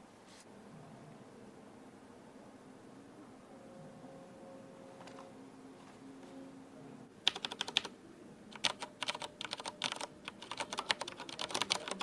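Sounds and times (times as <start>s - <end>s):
mechanical keyboard typing: 7.2s - 7.9s, 8.5s - 12.0s.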